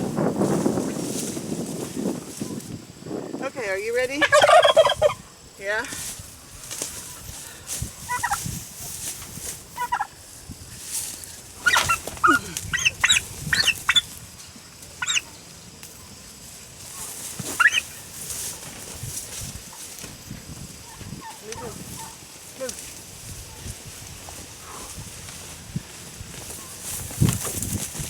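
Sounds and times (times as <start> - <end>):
turkeys gobbling: 4.2 - 5.3, 8.0 - 9.0, 9.6 - 10.2, 11.6 - 14.1, 14.9 - 15.4, 16.9 - 18.3, 20.8 - 22.3.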